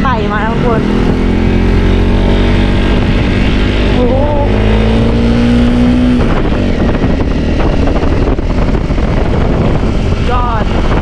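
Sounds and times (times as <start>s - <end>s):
motorcycle engine under load: 0.0s - 11.0s.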